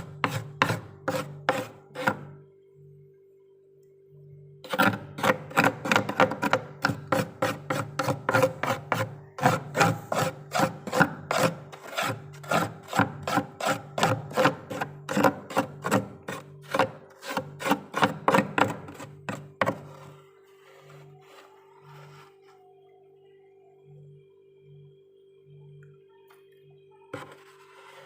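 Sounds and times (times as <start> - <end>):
spoon scraping frost: 0.0 - 2.3, 4.7 - 22.6.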